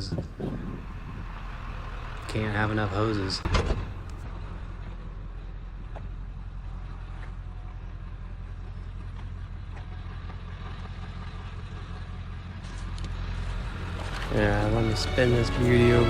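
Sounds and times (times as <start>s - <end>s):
truck engine running: 0.0s - 16.0s.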